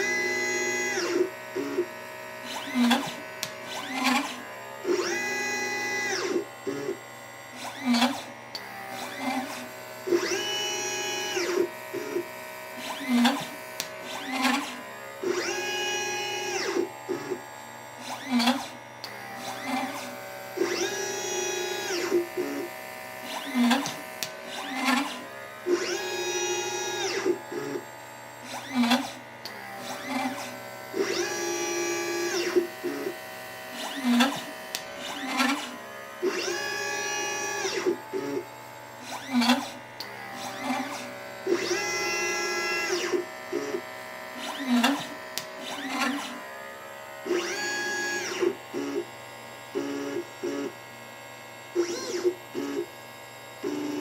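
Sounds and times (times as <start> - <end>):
stepper motors whining: 0.0 - 49.1, 51.8 - 52.9
sharp machine clicks: 0.8 - 5.2, 11.3 - 15.6, 18.0 - 46.4, 51.8 - 52.9.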